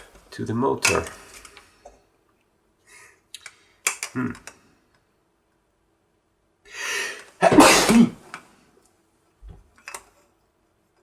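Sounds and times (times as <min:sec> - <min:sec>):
man sneezing: 0:07.4 - 0:08.3.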